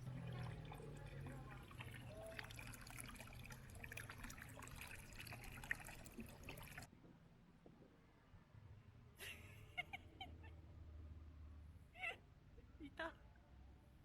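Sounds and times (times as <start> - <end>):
faint trickling water: 0.0 - 6.9.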